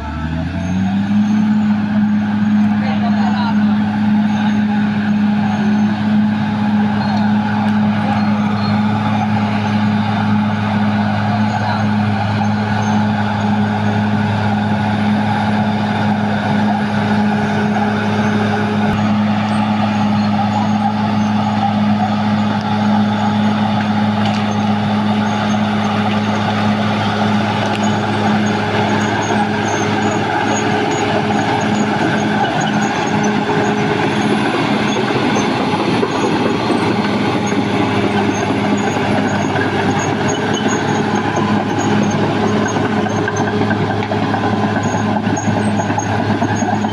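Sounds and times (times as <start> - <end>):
bulldozer diesel engine drone: 0.0 - 46.9.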